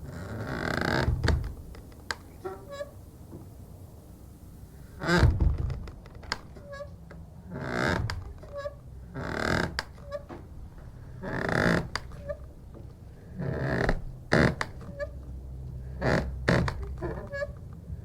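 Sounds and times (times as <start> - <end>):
wooden door creaking: 0.0 - 3.6, 4.9 - 17.7
short high squeaks: 2.1 - 3.1
low thump: 5.2 - 6.0.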